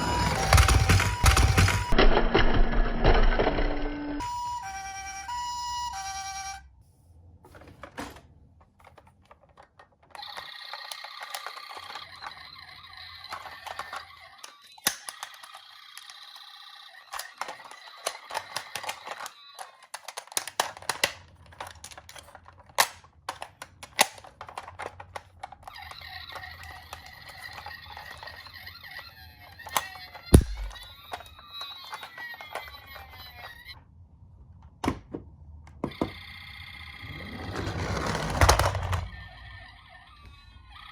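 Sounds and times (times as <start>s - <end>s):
toy siren two-tone wail: 0.0s - 2.0s, 4.2s - 6.7s, 10.2s - 19.8s, 25.7s - 33.8s, 36.0s - 37.2s, 39.1s - 40.9s
plastic clicks and clatter: 7.5s - 29.0s, 29.6s - 33.7s.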